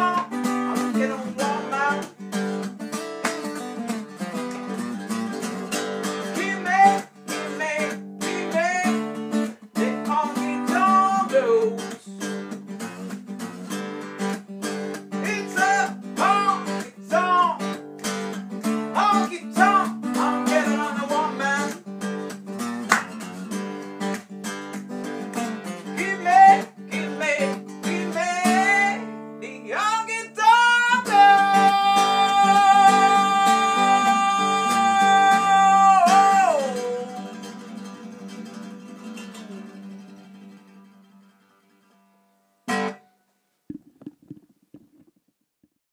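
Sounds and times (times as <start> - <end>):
person singing: 0.0 - 2.2, 6.3 - 9.1, 9.7 - 12.1, 15.2 - 17.8, 18.9 - 21.8, 25.9 - 39.2
acoustic guitar strumming: 0.0 - 44.4.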